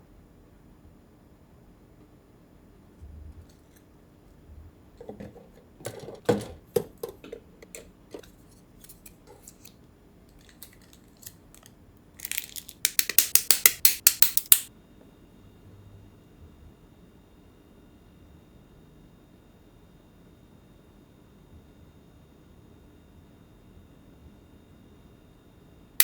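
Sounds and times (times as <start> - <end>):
plastic parts clicking and snapping: 5.9 - 14.7.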